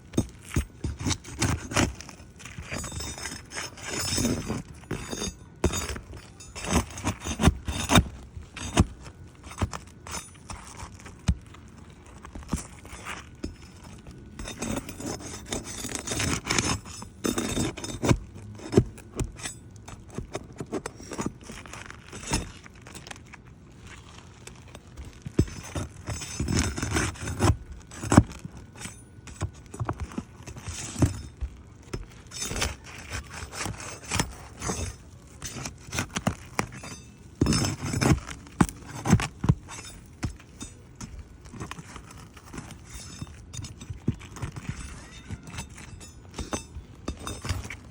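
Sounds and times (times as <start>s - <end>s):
scraping and crackling of shingles: 0.0s - 47.9s
sharp knocks and clinks: 24.6s - 47.9s.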